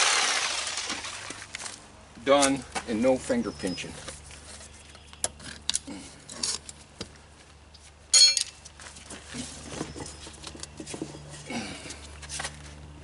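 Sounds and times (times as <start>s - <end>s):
ringing metal clank: 8.1s - 8.5s.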